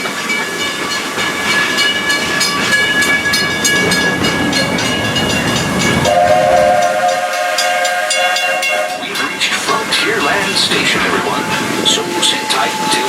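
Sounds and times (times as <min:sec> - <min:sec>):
train wheels clicking over rail joints: 0:00.0 - 0:13.0
steam whistle blowing: 0:06.0 - 0:09.2.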